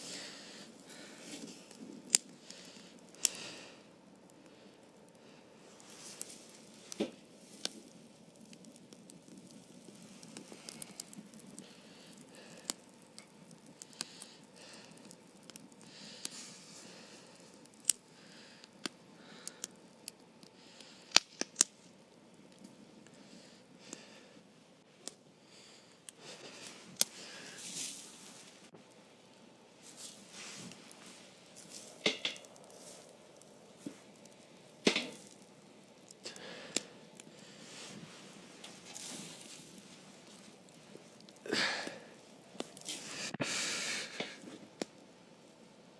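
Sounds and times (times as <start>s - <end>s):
firewood cracking at campfire: 0.0s - 45.9s
steady background hiss: 0.0s - 45.9s
soft rustling: 26.2s - 29.2s, 29.8s - 36.2s, 37.3s - 41.4s.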